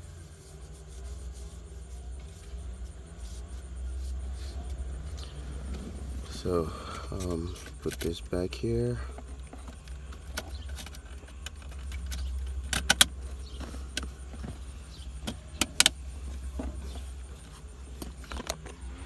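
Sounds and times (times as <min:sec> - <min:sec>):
plastic trim rattling and clicking: 0:07.0 - 0:16.0.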